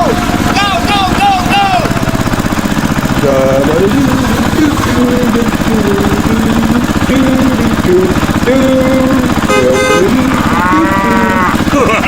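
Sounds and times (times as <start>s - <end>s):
stepped tones: 0.0s - 11.8s
engine chugging: 0.0s - 12.0s
horn-like blast: 9.4s - 11.6s.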